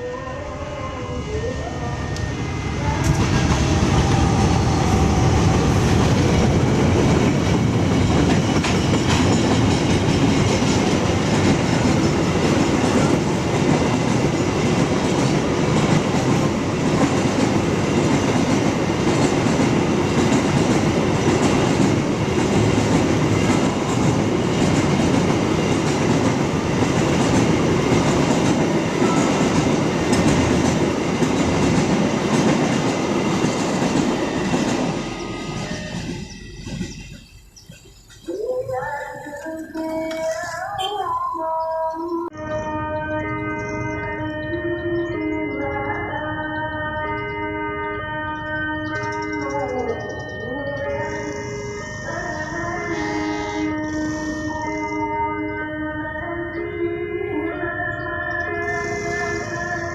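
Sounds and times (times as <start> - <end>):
train wheels rumbling on rails: 1.2 - 40.6.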